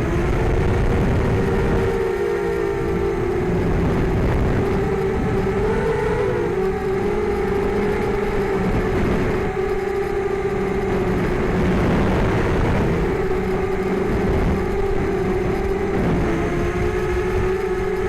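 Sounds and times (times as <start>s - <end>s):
drone motors whining: 0.0s - 18.0s
low rumbling noise: 0.0s - 18.0s.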